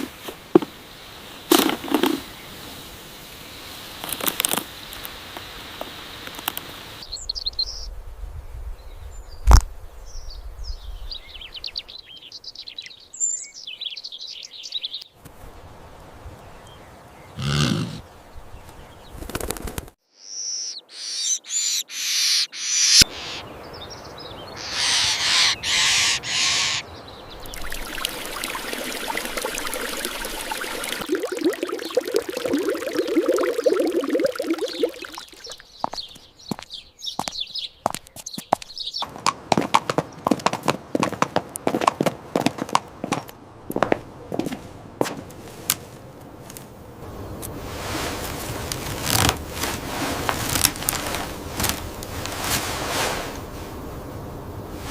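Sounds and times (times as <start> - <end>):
birds chirping: 16.4 - 19.3, 20.1 - 41.4
steady hiss: 24.5 - 35.5
short bursts of noise: 24.6 - 26.8.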